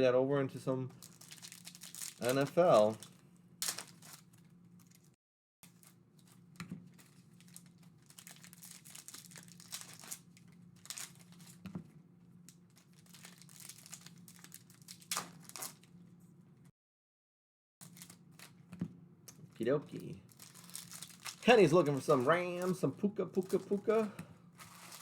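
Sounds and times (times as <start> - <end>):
plastic wrapping crinkling and tearing: 1.0 - 11.6, 12.5 - 15.9, 17.8 - 18.6, 19.9 - 25.0.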